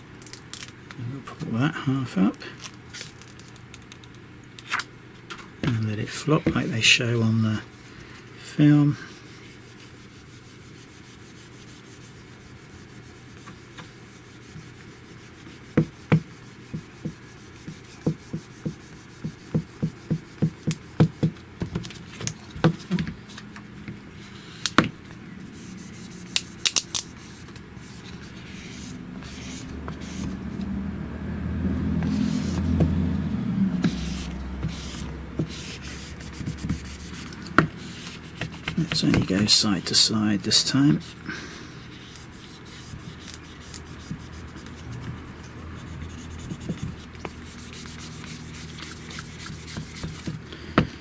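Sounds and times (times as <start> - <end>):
rubbing film on phone screen: 9.0 - 30.8, 32.0 - 33.0, 33.7 - 41.2, 41.8 - 50.4.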